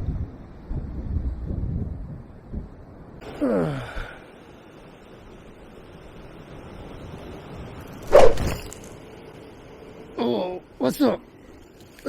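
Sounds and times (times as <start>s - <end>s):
man groaning: 3.3s - 4.1s.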